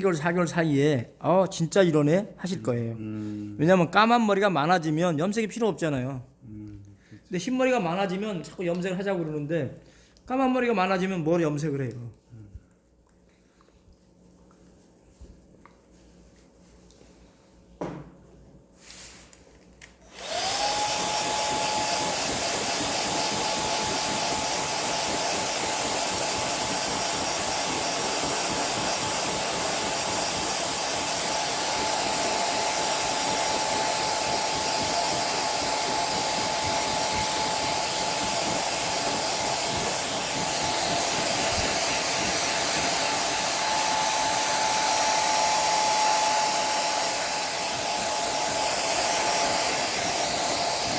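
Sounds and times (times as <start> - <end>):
hair dryer blowing: 19.9 - 50.9.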